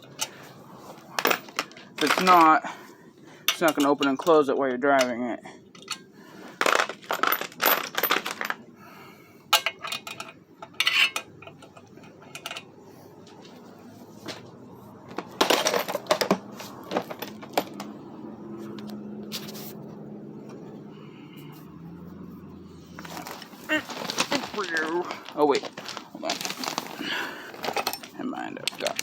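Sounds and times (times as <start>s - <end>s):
faint steady hum: 0.0s - 29.0s
metal hand tools clinking: 3.5s - 5.2s, 9.5s - 12.7s, 27.6s - 29.0s.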